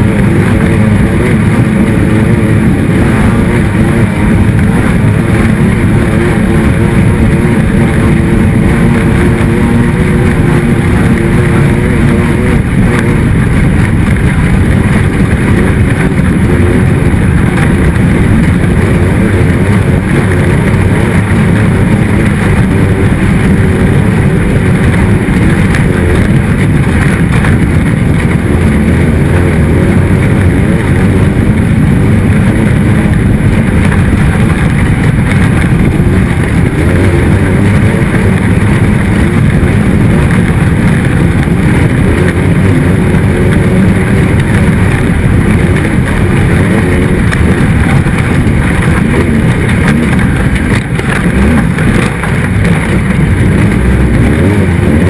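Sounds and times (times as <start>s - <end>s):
race vehicle engine running hard: 0.0s - 55.0s
wind noise: 0.0s - 55.0s.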